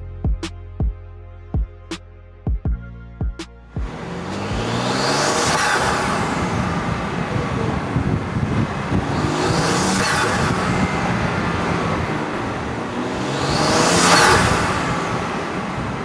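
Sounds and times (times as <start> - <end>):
car engine running: 3.8 - 16.0.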